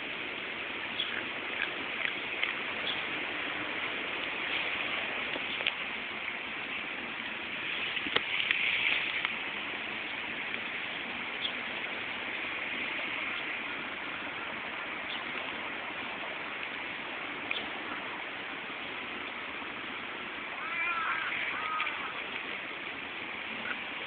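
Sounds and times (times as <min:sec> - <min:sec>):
steady hissing noise: 0:00.0 - 0:24.0
faint clicks: 0:21.6 - 0:22.2.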